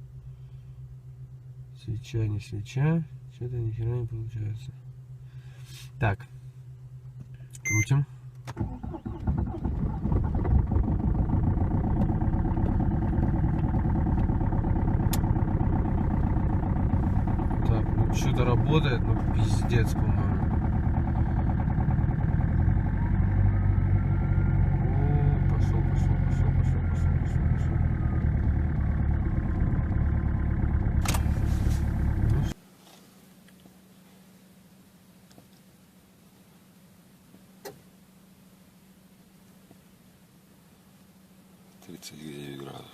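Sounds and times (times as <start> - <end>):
car engine cranking: 4.8 - 32.6.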